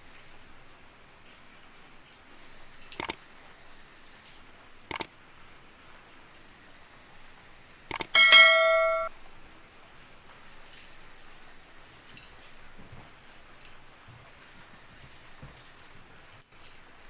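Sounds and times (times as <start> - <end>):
sharp clicks: 2.9 - 3.2, 4.9 - 5.1, 7.9 - 8.2
bright metallic ring: 8.2 - 9.1.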